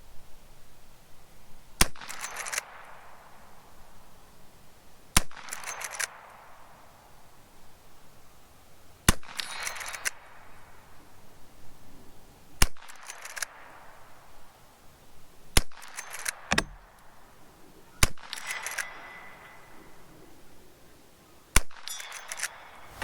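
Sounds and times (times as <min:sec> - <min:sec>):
metallic clacks of rifle lever: 0:02.0 - 0:02.7, 0:05.4 - 0:06.2, 0:12.9 - 0:13.5, 0:15.7 - 0:17.1, 0:18.2 - 0:19.6, 0:21.8 - 0:23.0
rifle shots: 0:16.0 - 0:16.9.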